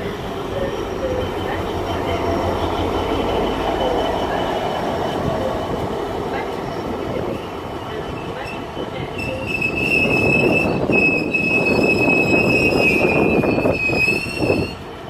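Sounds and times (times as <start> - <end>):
freight train rolling: 0.0 - 15.0
brake squeal: 8.2 - 14.8.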